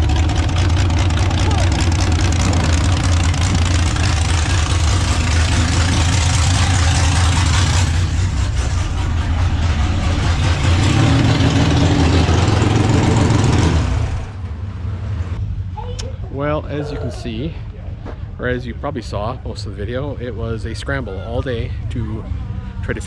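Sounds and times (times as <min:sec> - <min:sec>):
tractor engine running loud: 0:00.0 - 0:14.5.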